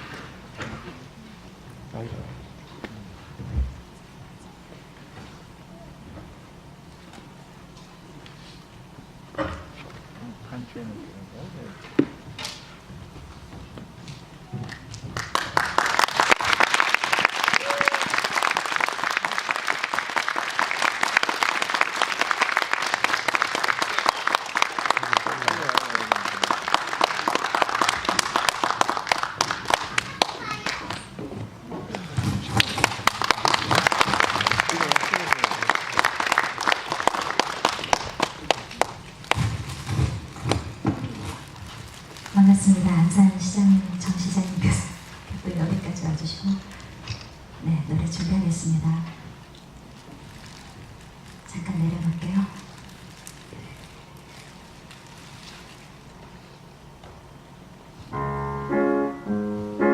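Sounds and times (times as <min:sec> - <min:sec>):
audience applauding: 0:14.6 - 0:31.1, 0:32.5 - 0:39.5.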